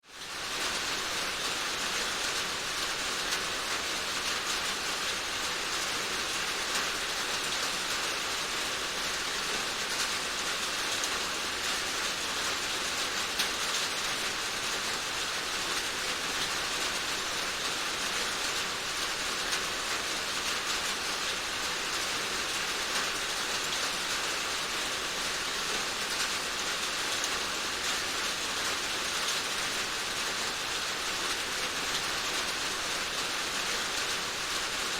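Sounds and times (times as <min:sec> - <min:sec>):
steady rain: 0:00.0 - 0:34.9.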